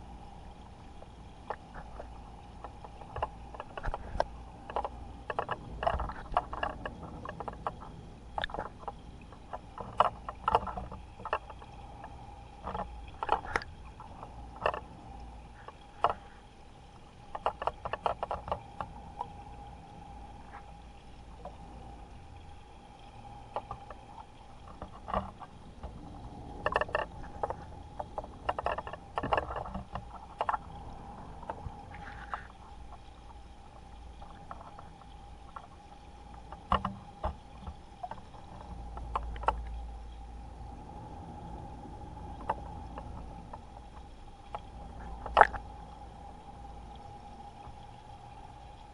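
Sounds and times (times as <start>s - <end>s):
octopus pushing water through siphon: 0.0s - 39.8s, 40.5s - 48.9s
steady hum: 0.0s - 48.9s
sharp wet clicks: 0.8s - 16.3s, 16.9s - 19.5s, 23.2s - 39.8s, 44.4s - 45.9s.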